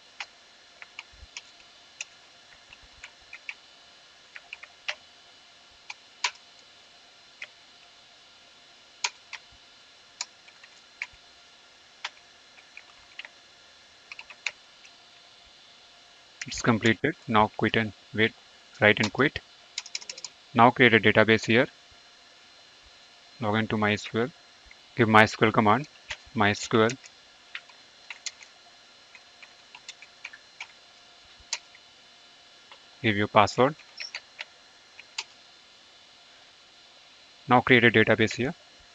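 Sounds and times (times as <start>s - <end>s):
faint steady hum: 0.0s - 38.9s
keyboard keys clicking: 14.1s - 14.6s.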